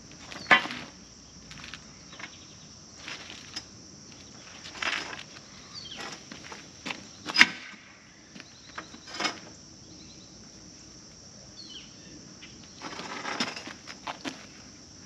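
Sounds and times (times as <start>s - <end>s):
rustling and shuffling: 0.0s - 7.4s
insects chirring: 0.0s - 15.0s.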